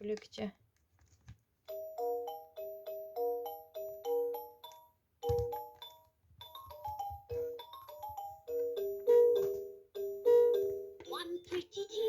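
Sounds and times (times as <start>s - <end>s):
toy playing electronic chime tune: 1.7s - 11.3s.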